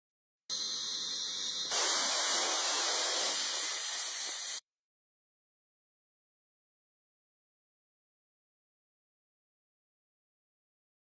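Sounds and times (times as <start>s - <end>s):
steady hissing noise: 0.5s - 4.6s.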